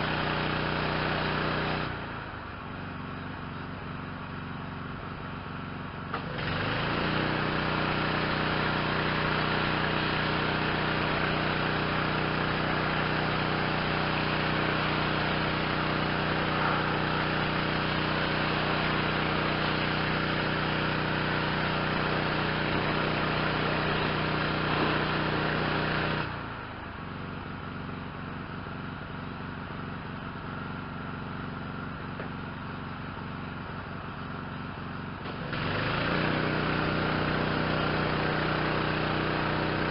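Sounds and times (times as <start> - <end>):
pressure washer engine: 0.0 - 39.9.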